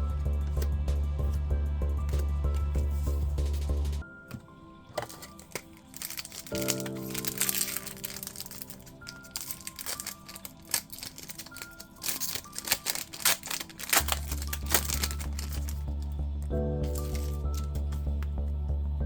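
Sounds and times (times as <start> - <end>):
cards being handled: 0.0 - 18.5
background music: 0.0 - 19.0
foil wrapper crinkling: 4.9 - 18.4.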